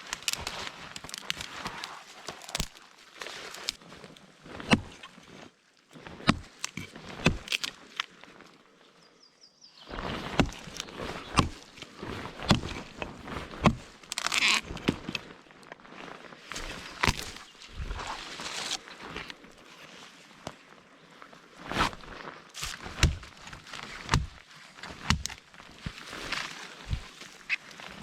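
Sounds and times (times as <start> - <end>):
knocks and cracks on forest floor: 0.0 - 8.3, 9.8 - 15.8, 16.4 - 19.6, 21.7 - 28.0.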